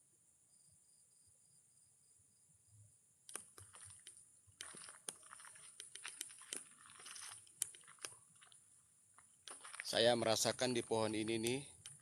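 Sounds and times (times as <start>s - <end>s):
night insects droning: 0.0s - 12.0s
dry leaves crunching underfoot: 4.6s - 8.6s, 9.5s - 11.3s.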